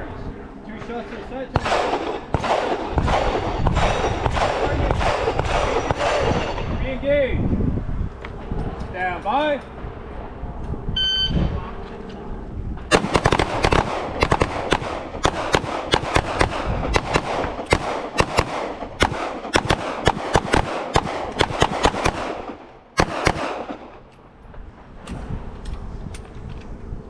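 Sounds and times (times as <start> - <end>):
handguns firing: 1.6 - 6.6, 12.9 - 24.1.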